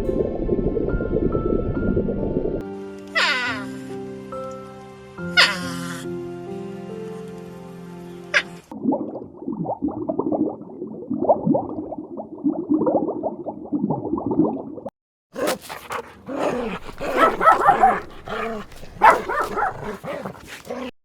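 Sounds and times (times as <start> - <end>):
high-pitched dog calls: 3.2 - 3.8, 16.4 - 20.3
dog sliding calls: 15.4 - 20.9.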